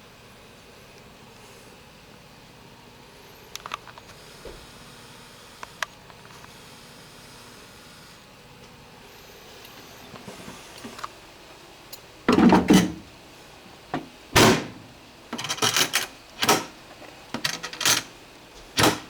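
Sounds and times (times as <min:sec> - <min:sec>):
objects knocking and clattering: 0:12.3 - 0:13.1.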